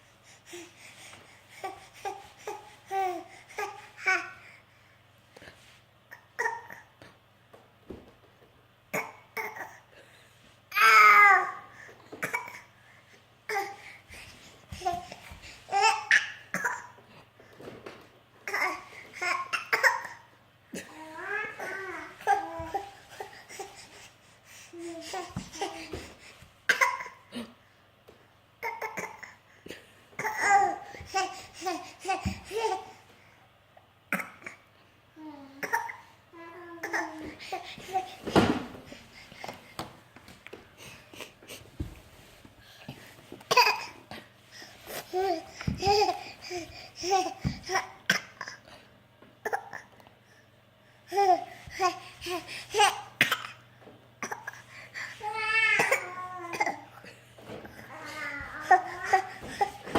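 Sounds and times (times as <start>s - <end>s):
baby babbling: 20.9s - 23.7s, 35.2s - 38.2s, 57.8s - 59.8s.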